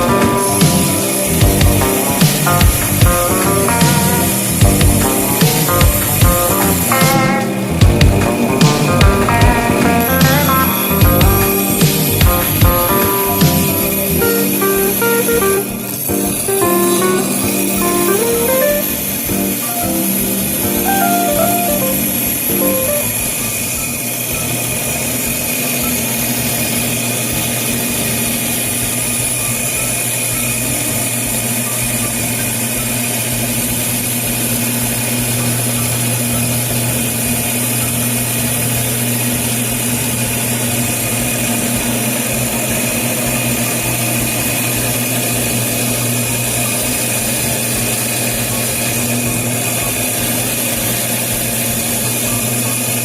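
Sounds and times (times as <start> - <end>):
band saw motor hum and whine: 0.0 - 20.9.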